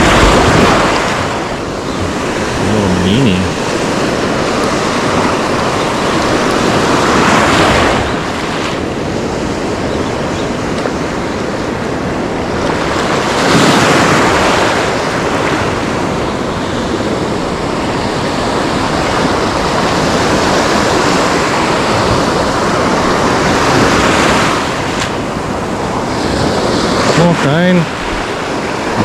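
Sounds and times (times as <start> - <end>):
wind buffeting microphone: 0.0 - 2.6
surf breaking on shoreline: 0.0 - 29.0.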